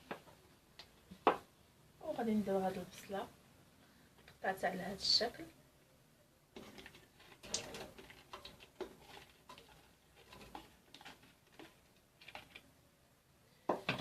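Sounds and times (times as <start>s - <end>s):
pot and utensils clicking: 6.6s - 12.6s.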